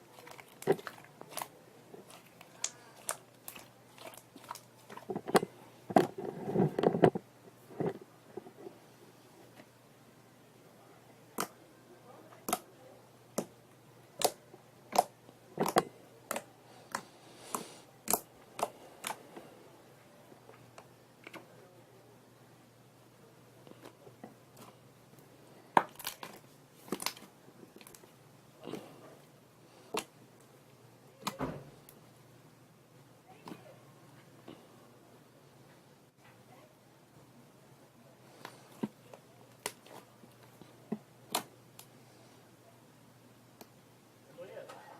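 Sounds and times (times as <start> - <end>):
slime squished by hand: 0.1 - 5.5.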